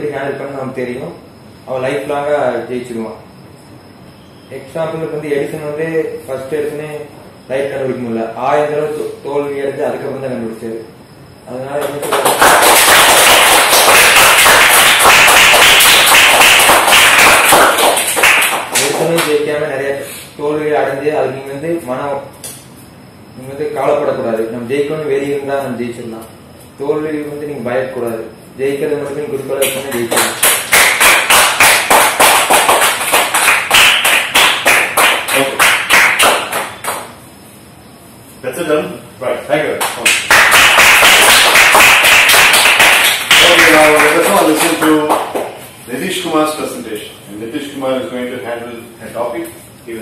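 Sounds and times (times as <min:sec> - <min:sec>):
small group applauding: 0:11.6 - 0:19.5, 0:29.6 - 0:37.2, 0:39.7 - 0:45.7.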